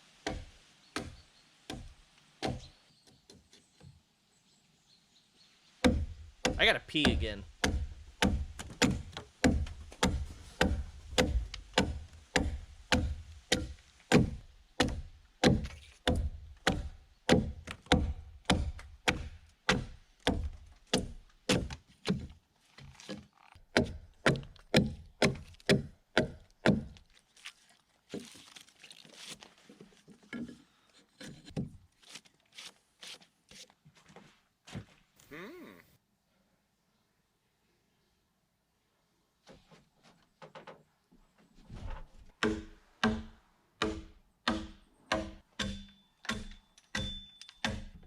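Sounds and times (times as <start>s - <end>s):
axe chopping wooden log: 5.8s - 22.3s, 23.7s - 27.0s, 42.4s - 48.0s.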